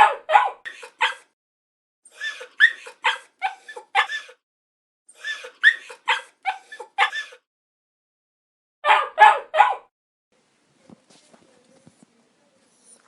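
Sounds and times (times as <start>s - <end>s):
puppy whimpering yelps: 5.3s - 7.4s.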